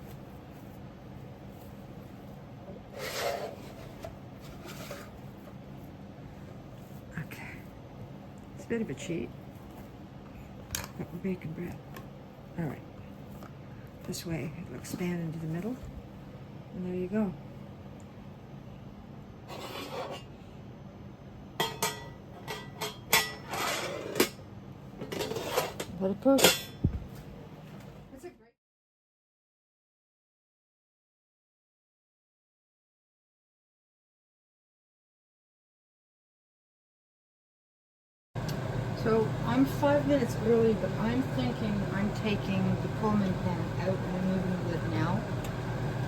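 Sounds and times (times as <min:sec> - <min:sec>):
low background hum: 0:00.0 - 0:28.5, 0:38.4 - 0:46.0
metal pan scraping: 0:02.9 - 0:05.2, 0:19.5 - 0:20.3, 0:23.2 - 0:24.3, 0:25.1 - 0:25.9
soft rubbing rustle: 0:03.0 - 0:07.3.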